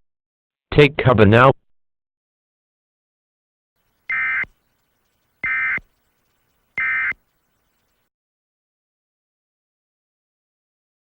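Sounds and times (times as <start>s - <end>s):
buzzy digital data tones: 4.1s - 8.1s.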